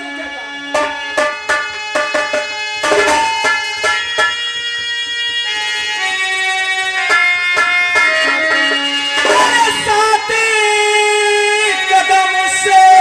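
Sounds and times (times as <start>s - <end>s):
sustained melody notes: 0.0s - 13.0s
drum strikes: 0.7s - 6.1s, 6.9s - 10.1s.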